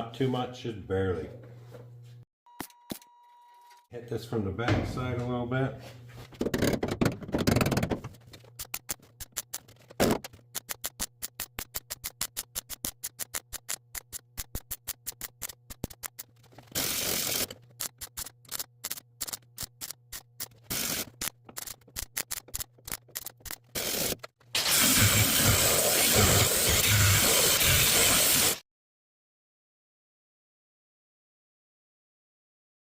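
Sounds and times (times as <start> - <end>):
welder crackling: 8.4 - 28.6.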